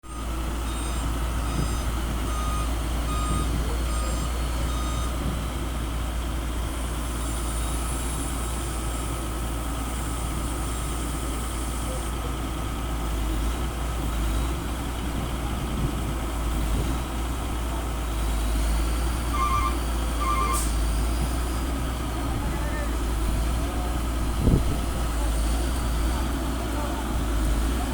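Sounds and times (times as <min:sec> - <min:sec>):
diesel machinery rumbling: 0:00.0 - 0:27.9
backup alarm beeping: 0:00.1 - 0:05.2, 0:19.3 - 0:20.7
quick chirping beeps: 0:19.3 - 0:20.7.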